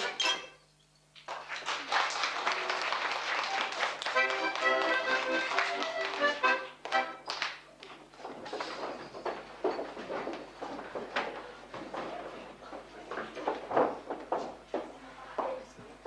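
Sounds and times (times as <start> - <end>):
accordion playing a tune: 0.0 - 0.6, 3.4 - 7.4.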